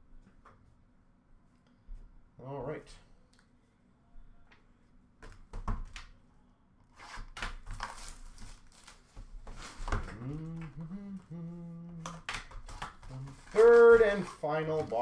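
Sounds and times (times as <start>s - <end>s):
wrapping crinkling and tearing: 7.0s - 10.6s, 12.0s - 15.0s
low steady hum: 10.0s - 15.0s.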